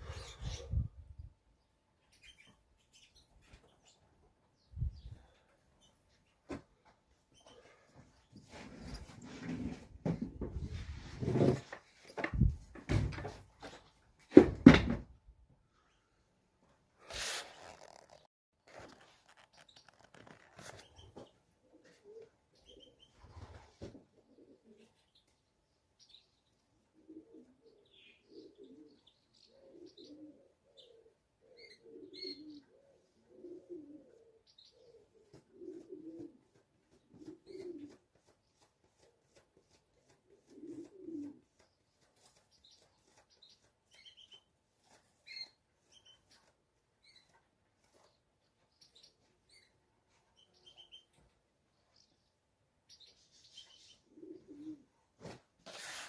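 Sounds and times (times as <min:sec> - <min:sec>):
pigeons cooing: 0:00.0 - 0:01.0, 0:21.6 - 0:25.0, 0:26.9 - 0:38.0, 0:40.2 - 0:41.6, 0:53.6 - 0:55.0
small birds chirping: 0:00.0 - 0:06.4, 0:07.2 - 0:08.4, 0:17.0 - 0:23.5, 0:24.3 - 0:36.1, 0:36.9 - 0:54.8.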